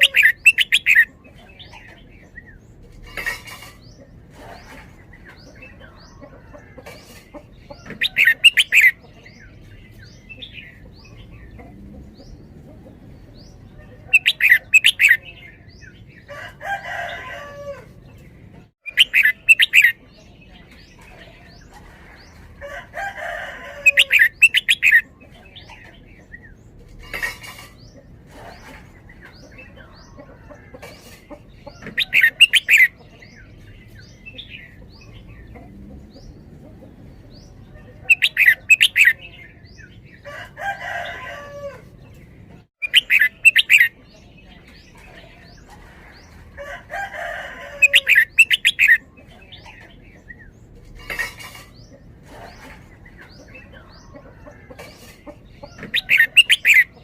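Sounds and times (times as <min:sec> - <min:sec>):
bird song with bubbling notes: 0:00.0 - 0:02.6.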